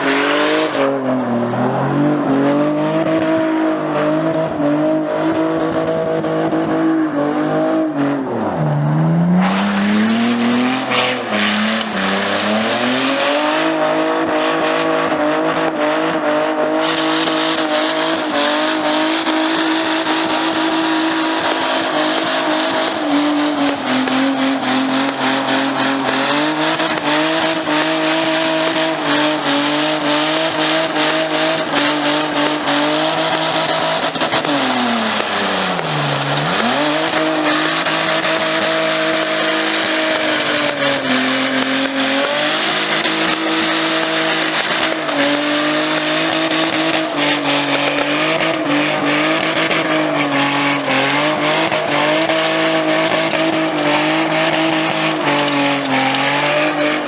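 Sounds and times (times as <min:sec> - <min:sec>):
car engine revving: 0:00.0 - 0:57.0.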